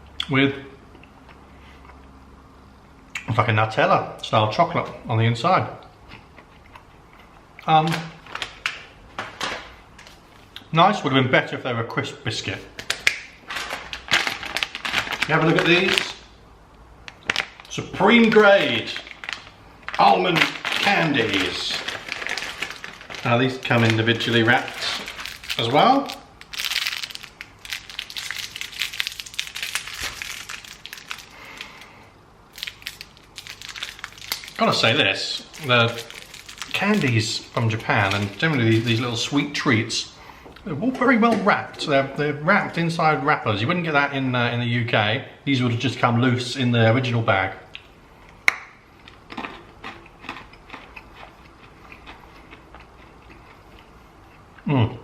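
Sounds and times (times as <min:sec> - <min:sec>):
candy wrapper crinkling: 0:07.8 - 0:10.2, 0:12.8 - 0:16.3, 0:17.0 - 0:31.9, 0:32.5 - 0:39.6.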